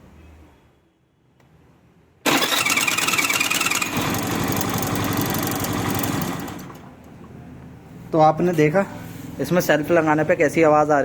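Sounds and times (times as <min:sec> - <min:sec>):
starter whining and grinding: 0:02.2 - 0:07.1
scooter engine running: 0:02.3 - 0:06.9.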